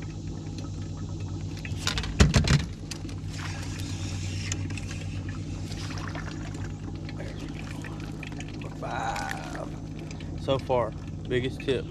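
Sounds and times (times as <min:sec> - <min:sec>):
steady low hum: 0:00.0 - 0:11.9
knocks and thumps on a boat: 0:01.8 - 0:03.0.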